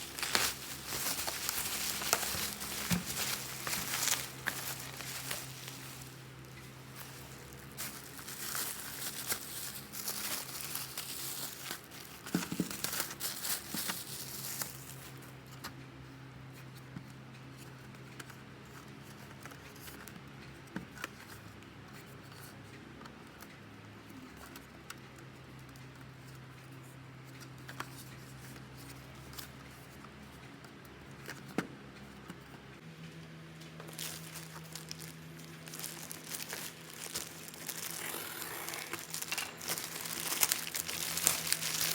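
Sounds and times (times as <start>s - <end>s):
plastic packaging crinkling and tearing: 0.0s - 15.2s, 33.8s - 41.9s.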